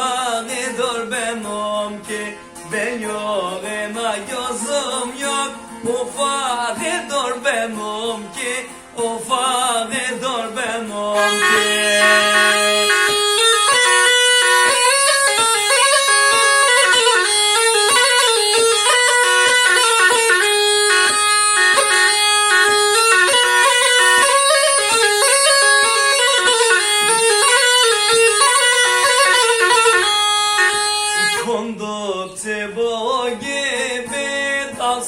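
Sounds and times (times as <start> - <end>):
bagpipe playing fast melody: 11.2 - 31.5.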